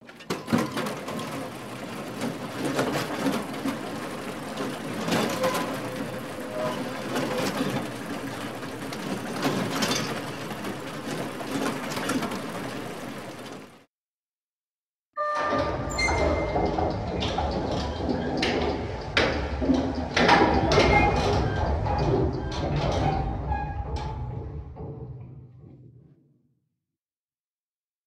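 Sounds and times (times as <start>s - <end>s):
clicks and knocks: 0.0s - 13.8s
elevator rattle and hum: 0.0s - 13.8s, 15.4s - 25.6s.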